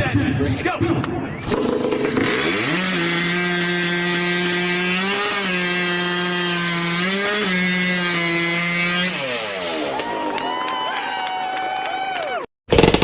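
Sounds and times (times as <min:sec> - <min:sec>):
chainsaw cutting wood at full throttle: 0:01.4 - 0:10.4, 0:12.7 - 0:13.0.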